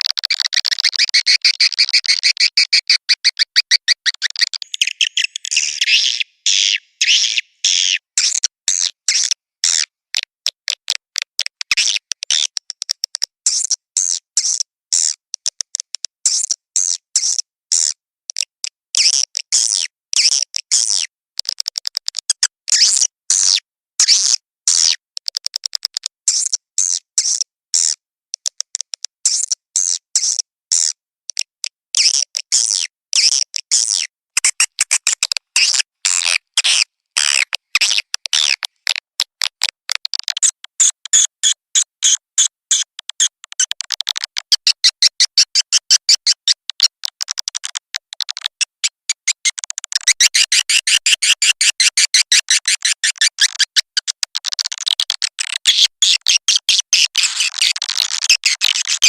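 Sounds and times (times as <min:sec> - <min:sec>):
swiftlets chirping and twittering: 0:00.8 - 0:08.0.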